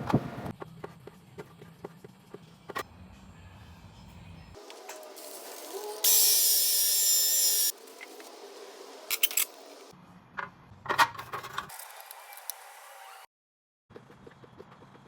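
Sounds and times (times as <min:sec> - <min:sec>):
hissing whining tool: 0:04.6 - 0:08.3.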